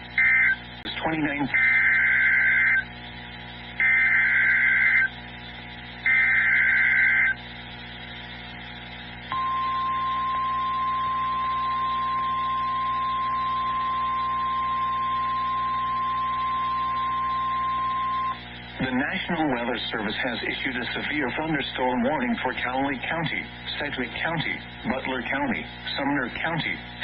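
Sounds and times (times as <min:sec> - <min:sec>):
steady warning alarm tone: 0:00.1 - 0:00.6, 0:01.3 - 0:02.9, 0:03.8 - 0:05.2, 0:06.0 - 0:07.5, 0:09.3 - 0:18.4
digital data tones: 0:03.8 - 0:05.1, 0:06.1 - 0:07.5, 0:09.3 - 0:18.4.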